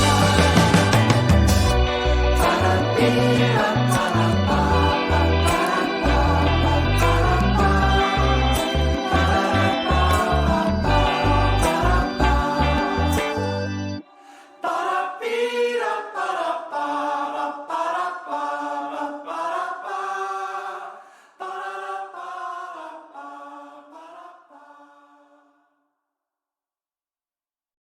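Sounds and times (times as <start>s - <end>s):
full band playing: 0.0s - 6.4s
voices singing in harmony: 0.0s - 25.7s.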